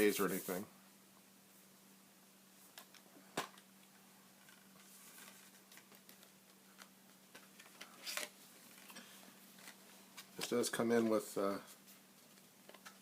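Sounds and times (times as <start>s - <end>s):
soft rustling: 4.3s - 13.0s.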